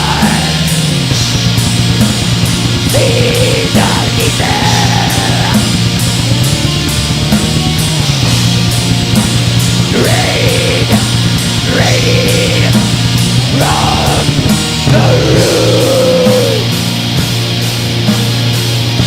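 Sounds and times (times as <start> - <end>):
long held vocals: 0.0 - 1.6, 2.6 - 6.3, 9.8 - 17.0
distorted electric guitars: 0.0 - 19.0
fast drum strokes: 0.0 - 19.0.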